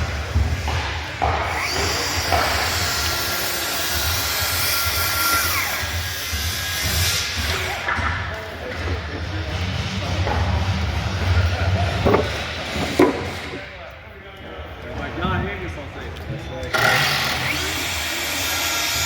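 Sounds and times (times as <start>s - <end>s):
power tool running: 0.0s - 8.0s, 16.6s - 19.0s.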